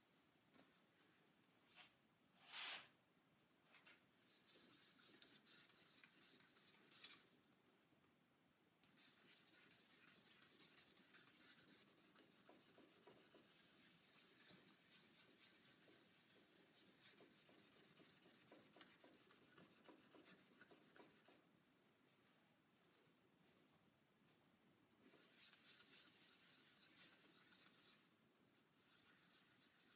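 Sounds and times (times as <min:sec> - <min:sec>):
faint wet sanding by hand: 0:04.3 - 0:07.3, 0:08.9 - 0:21.5, 0:25.0 - 0:29.9.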